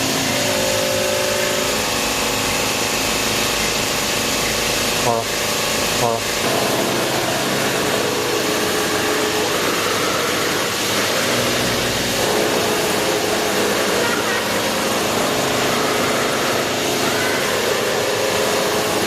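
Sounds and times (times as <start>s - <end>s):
machine hiss: 0.0s - 19.0s.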